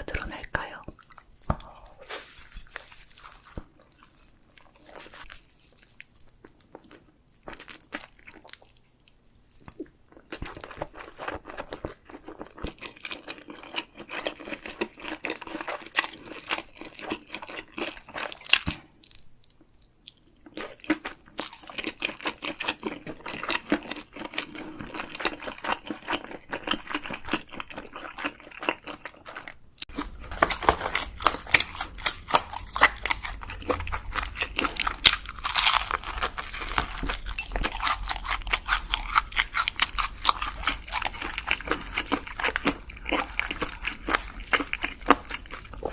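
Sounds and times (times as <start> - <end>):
crunchy bites and chewing: 20.5 - 45.9.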